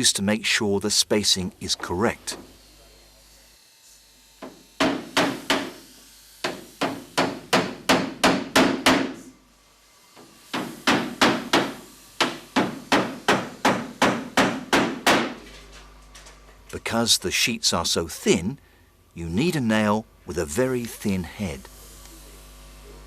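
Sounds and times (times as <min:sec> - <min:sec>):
hammer driving nails into wood: 0:10.5 - 0:15.4.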